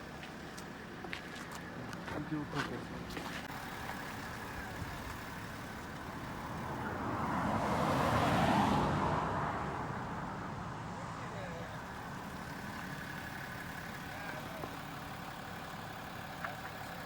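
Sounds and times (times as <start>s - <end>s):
motor vehicle passing by: 4.2s - 10.6s.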